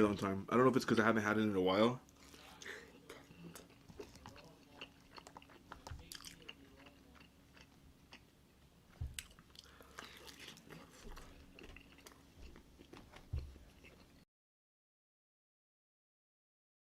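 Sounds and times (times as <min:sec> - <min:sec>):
chewing and biting food: 0:02.1 - 0:08.3, 0:08.9 - 0:14.2.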